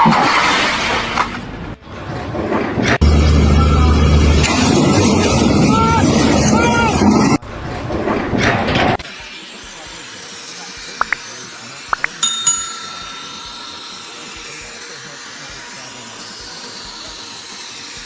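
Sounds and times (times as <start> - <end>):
ringing metallic strikes: 12.2 - 15.1.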